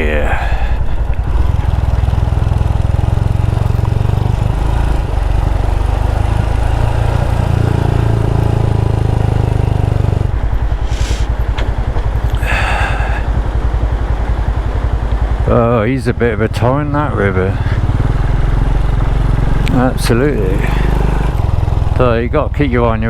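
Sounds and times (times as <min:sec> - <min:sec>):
motorcycle engine running: 0:00.0 - 0:23.0
short bursts of noise: 0:10.8 - 0:11.3.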